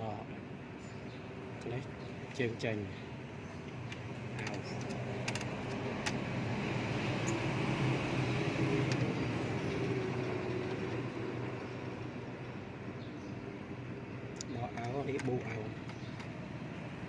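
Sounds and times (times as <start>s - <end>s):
passing vehicle engine: 4.6s - 12.8s.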